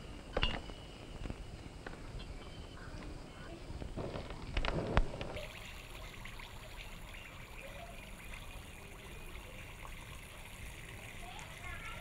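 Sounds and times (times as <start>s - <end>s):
water trickling: 4.3s - 12.0s.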